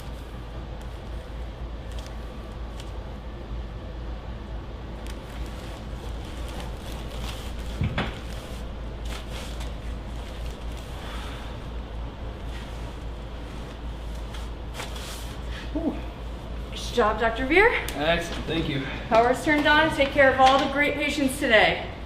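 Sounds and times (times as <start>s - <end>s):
steady low hum: 0.0s - 22.0s
rustling of hands and clothing: 5.0s - 16.8s.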